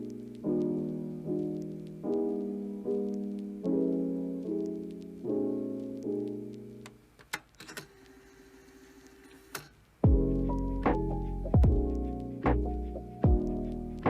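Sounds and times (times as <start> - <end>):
soft piano chords: 0.0 - 7.2, 10.0 - 14.0.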